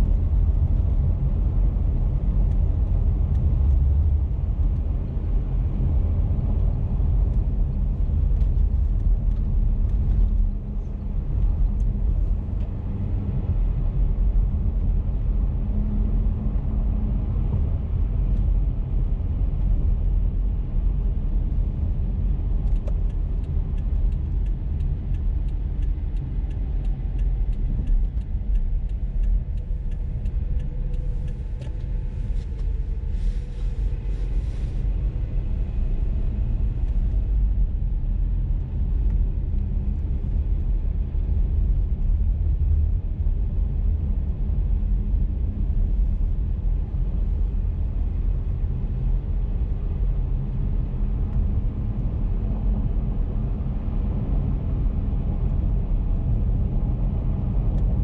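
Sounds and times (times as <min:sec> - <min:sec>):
car engine and tyre rumble: 0:00.0 - 0:58.0
light regular ticking: 0:22.7 - 0:32.8.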